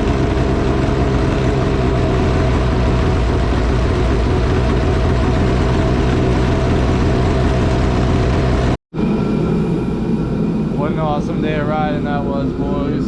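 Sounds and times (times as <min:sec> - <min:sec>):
snowmobile engine running: 0:00.0 - 0:08.8.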